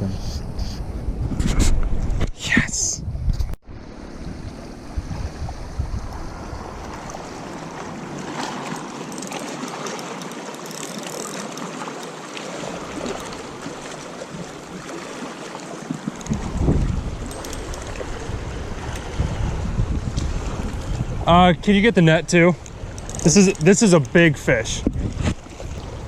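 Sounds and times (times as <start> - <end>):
river water rushing: 6.4 - 16.4
faint clicks: 22.6 - 26.0.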